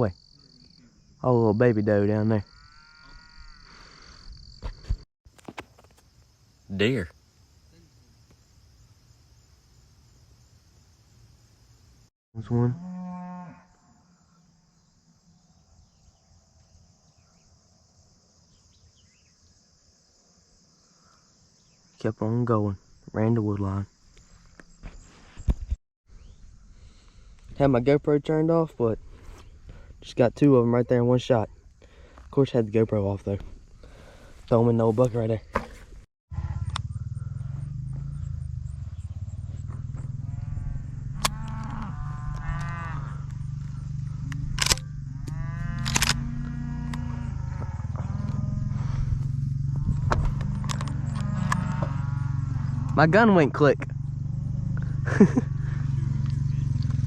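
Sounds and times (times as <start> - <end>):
insects chirping: 0.0 - 57.0
cattle mooing: 2.4 - 3.8, 12.5 - 13.8, 36.3 - 38.4, 39.8 - 50.1, 50.7 - 53.1
steady low rumble: 36.3 - 53.0
sharp click: 44.3 - 46.2.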